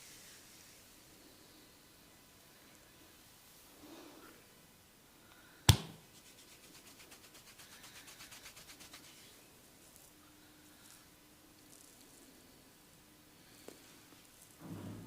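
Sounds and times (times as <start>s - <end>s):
sharp crack: 5.7s - 6.0s
scratching strokes through hair: 6.0s - 12.6s, 13.5s - 14.6s.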